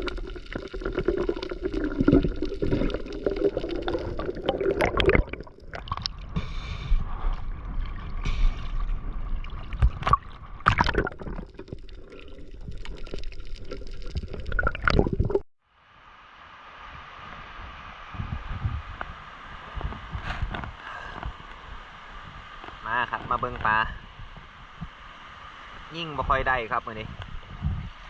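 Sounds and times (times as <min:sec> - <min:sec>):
seawater sloshing and gurgling: 0:00.0 - 0:15.4
water splashing and bubbling: 0:00.0 - 0:15.5.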